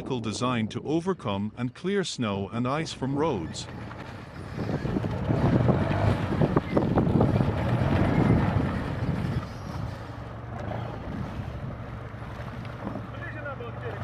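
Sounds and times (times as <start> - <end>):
off-road vehicle engine under load: 3.5 - 14.0.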